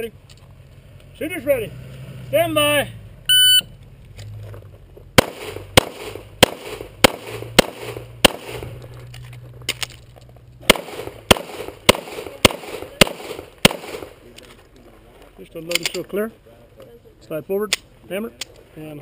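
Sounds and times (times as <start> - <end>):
pistol shots: 5.2 - 8.8, 10.6 - 14.2.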